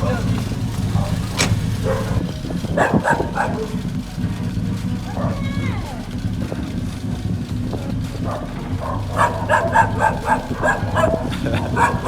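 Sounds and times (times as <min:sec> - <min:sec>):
low engine hum: 0:00.0 - 0:12.0
dog barking rapidly: 0:00.9 - 0:03.9, 0:08.2 - 0:12.0.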